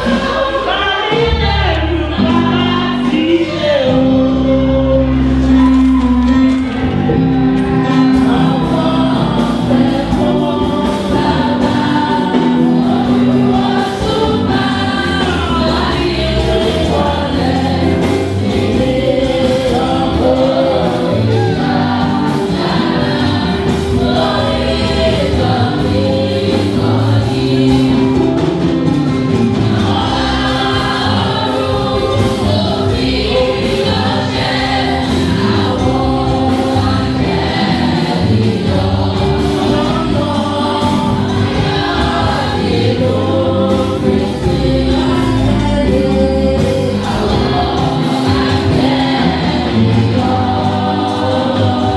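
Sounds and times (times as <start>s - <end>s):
choir singing a hymn: 0.0s - 51.9s
sustained instrumental backing: 0.0s - 51.9s.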